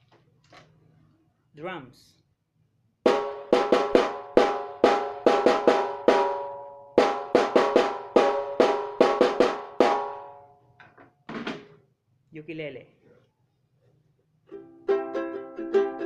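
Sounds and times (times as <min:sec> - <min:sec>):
pitched drum hits: 0:03.1 - 0:10.4, 0:11.3 - 0:11.7.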